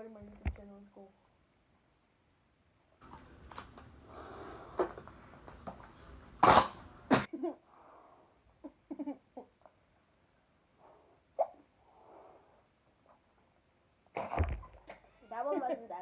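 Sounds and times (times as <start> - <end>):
small throaty sounds: 3.0 - 15.2.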